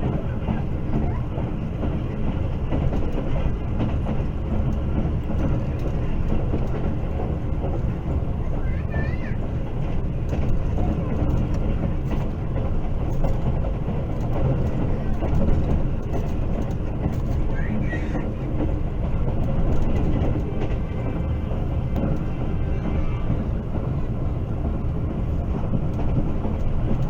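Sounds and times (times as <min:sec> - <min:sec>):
train rumbling on rails: 0:00.0 - 0:27.0
faint wheel clicks: 0:10.2 - 0:22.5.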